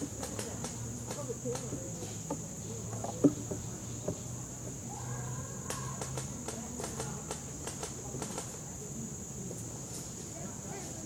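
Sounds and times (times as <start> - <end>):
high insect drone: 0.0 - 11.0
sharp ticks: 0.1 - 1.8, 5.7 - 8.6.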